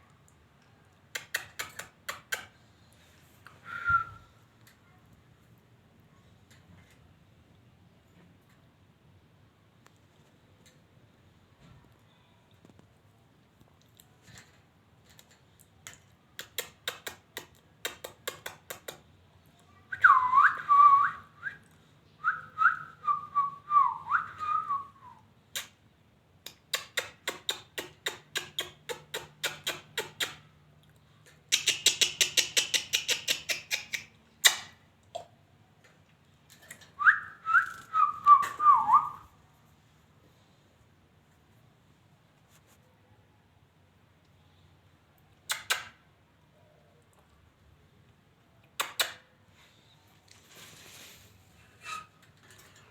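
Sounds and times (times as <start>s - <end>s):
buzzy bird chatter: 31.5s - 34.7s.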